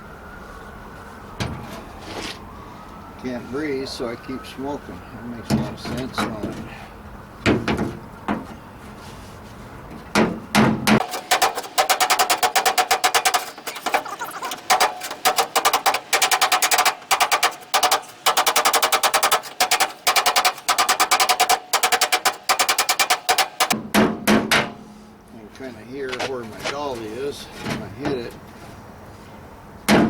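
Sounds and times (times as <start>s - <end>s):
hammer knocking on steel panel: 10.2s - 14.0s, 14.6s - 24.7s
ringing metal taps: 10.2s - 23.8s.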